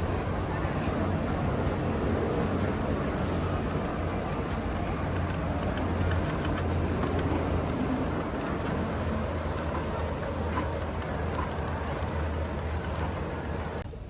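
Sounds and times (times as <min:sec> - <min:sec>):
monorail cabin hum and rumble: 0:00.0 - 0:14.0.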